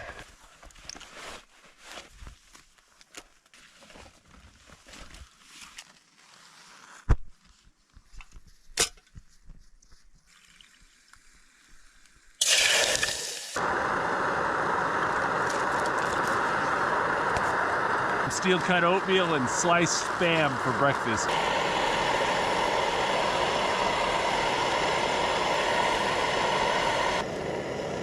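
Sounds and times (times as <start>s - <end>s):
gas stove burner hissing: 12.4s - 28.0s.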